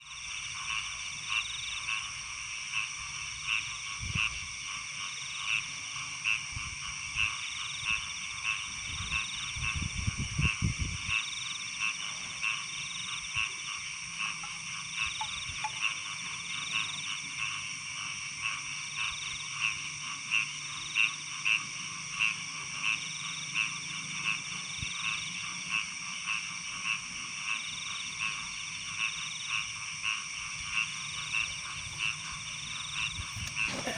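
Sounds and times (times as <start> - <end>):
animal calls: 31.4 - 33.9.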